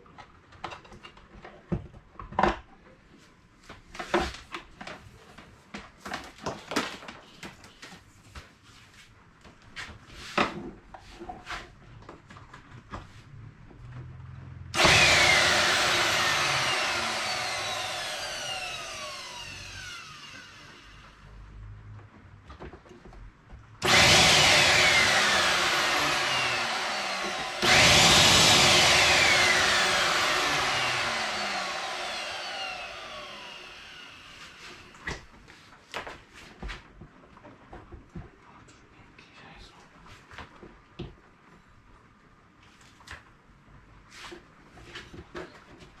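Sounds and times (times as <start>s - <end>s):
vacuum cleaner motor whine: 14.8s - 21.2s, 23.8s - 35.1s.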